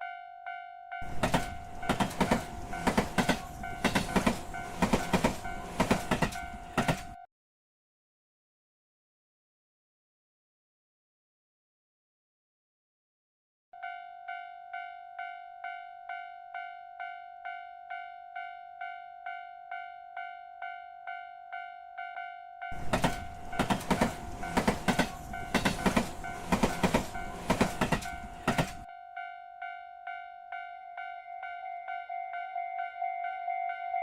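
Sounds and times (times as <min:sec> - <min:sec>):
railroad crossing bell ringing: 0:00.0 - 0:07.2, 0:13.8 - 0:34.0
train wheels clacking: 0:01.0 - 0:07.2, 0:22.8 - 0:28.9.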